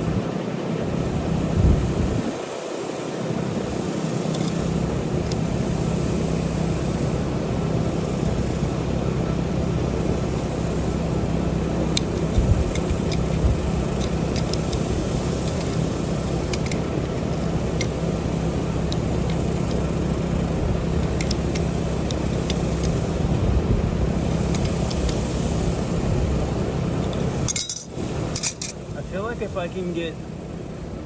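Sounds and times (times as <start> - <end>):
engine-like hum: 0.0 - 31.0.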